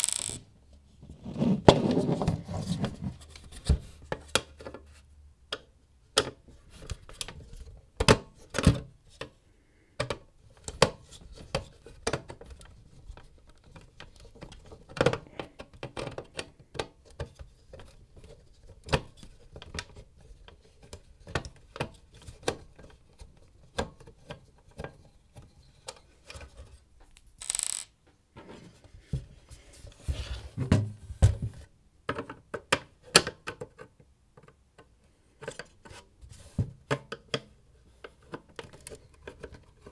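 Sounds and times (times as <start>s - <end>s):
clicks and rattles of parts: 0.0s - 0.4s, 25.8s - 28.0s.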